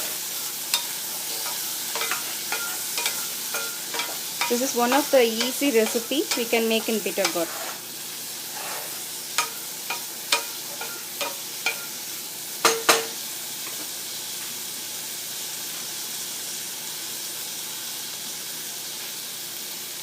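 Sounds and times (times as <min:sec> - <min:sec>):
vegetables sizzling in oil: 0:00.0 - 0:20.0
utensil knocking against pan: 0:12.6 - 0:13.2.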